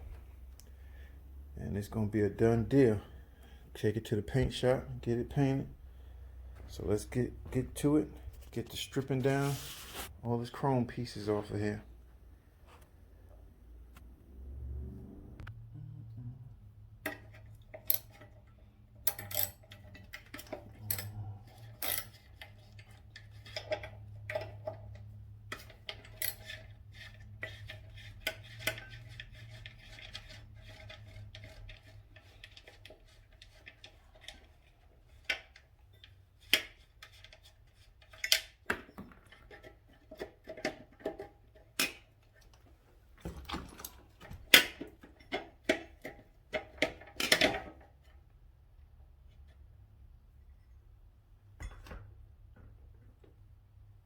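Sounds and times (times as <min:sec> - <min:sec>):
metal tools clinking and knocking: 0:19.0 - 0:24.8.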